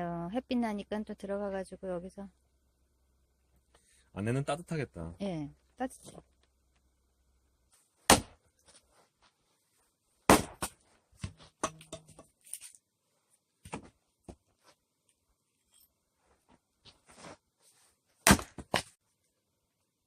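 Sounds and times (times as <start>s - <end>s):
axe splitting firewood: 8.0s - 8.4s, 10.2s - 12.6s, 18.2s - 19.0s.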